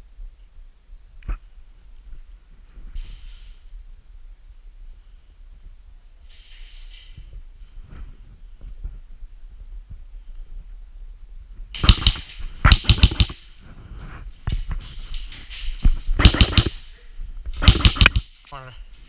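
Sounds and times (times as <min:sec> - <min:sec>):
airsoft guns firing bursts: 0:11.8 - 0:13.5, 0:16.2 - 0:16.8, 0:17.6 - 0:18.4.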